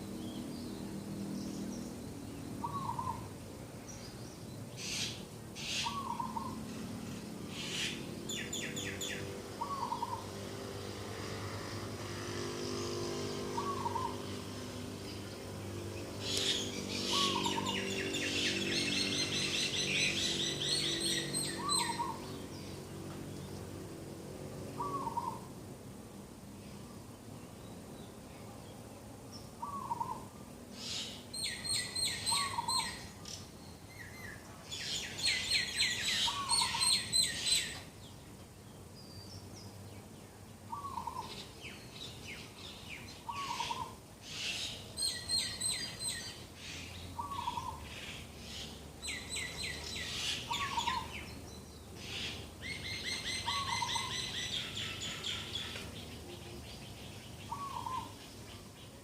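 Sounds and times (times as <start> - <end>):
birds singing rapid high notes: 7.6 - 22.9
bird low down-slurred call: 13.6 - 14.2, 24.8 - 25.5, 57.5 - 58.2.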